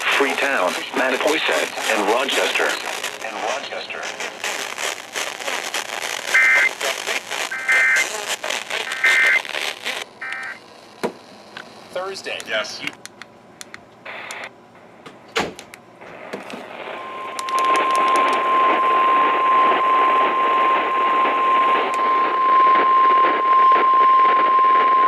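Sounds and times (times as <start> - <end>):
radio static: 0.0 - 12.9, 14.1 - 14.5, 16.0 - 25.0
steady alarm tone: 16.8 - 25.0.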